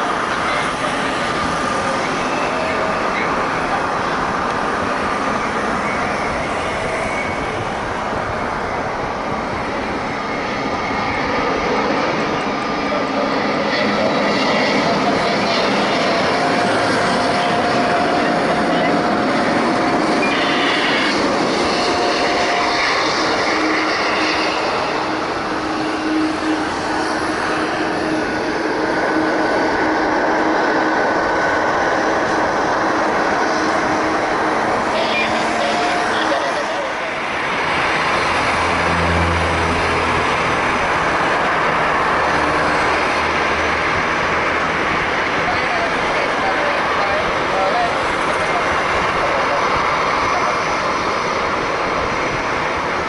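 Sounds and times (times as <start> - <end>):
jet engines running: 0.0 - 53.0
thin whine: 8.4 - 43.2.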